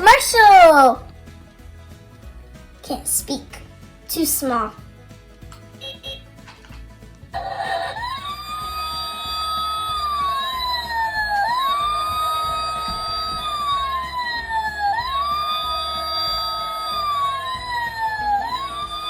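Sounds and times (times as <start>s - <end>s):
electronic siren wailing: 7.4s - 19.0s.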